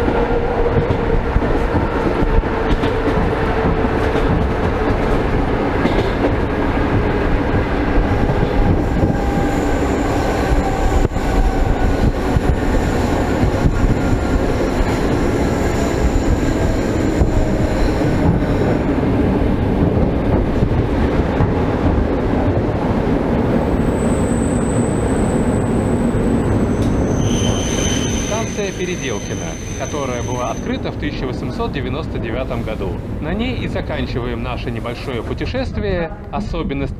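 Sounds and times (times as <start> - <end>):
train wheels rumbling: 0.0 - 35.8
high wheel squeal: 8.8 - 18.8, 23.8 - 30.8.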